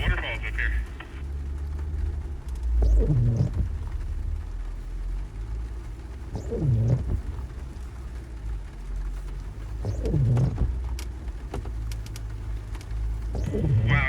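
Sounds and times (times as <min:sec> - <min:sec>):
off-road vehicle engine rumble: 0:00.0 - 0:14.0
low pitch-bending sounds: 0:13.2 - 0:14.0.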